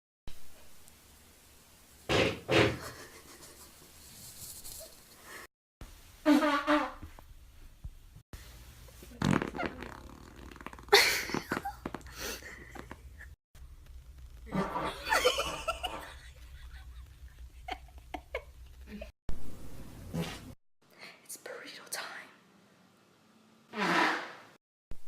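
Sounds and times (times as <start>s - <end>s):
farts: 6.2s - 7.1s, 9.0s - 12.2s, 14.3s - 15.2s, 23.7s - 24.6s.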